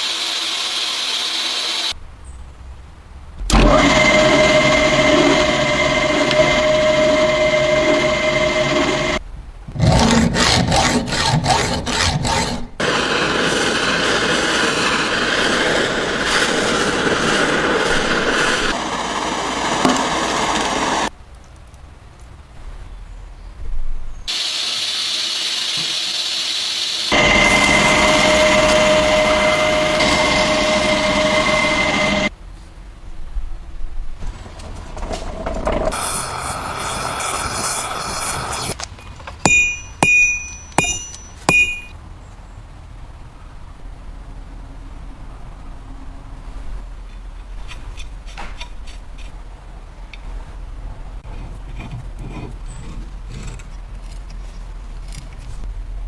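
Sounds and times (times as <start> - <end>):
power tool grinding: 0.0 - 2.0, 3.5 - 21.1, 24.3 - 32.3, 34.6 - 41.9
rushing hiss: 35.9 - 38.8.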